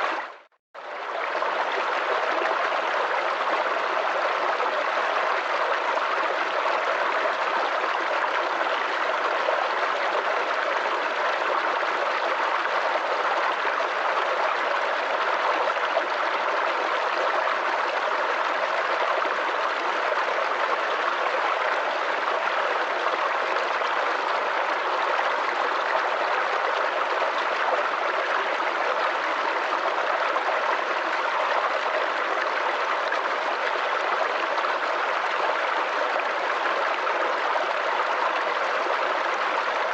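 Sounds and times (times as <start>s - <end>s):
brook babbling over stones: 0.0s - 39.9s.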